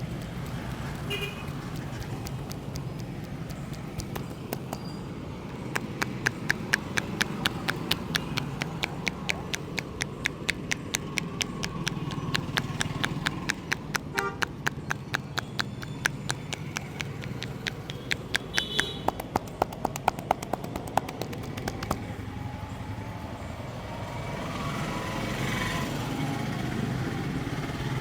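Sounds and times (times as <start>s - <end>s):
hands patting on head: 0.0s - 5.0s, 5.6s - 22.1s.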